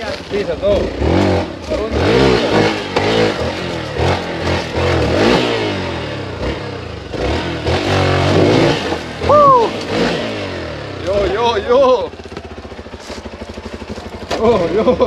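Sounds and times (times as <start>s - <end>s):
motorcycle engine revving: 0.0s - 15.0s
person shouting: 9.2s - 9.9s.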